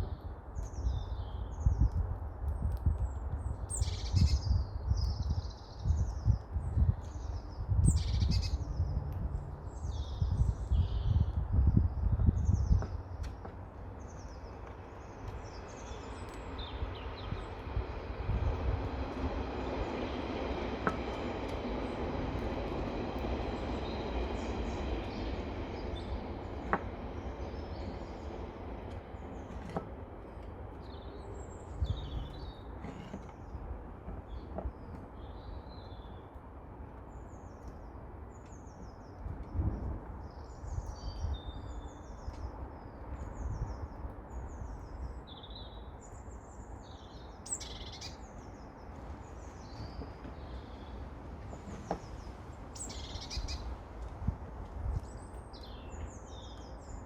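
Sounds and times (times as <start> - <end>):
small birds chirping: 3.0 - 9.0, 37.1 - 53.7, 54.9 - 57.0.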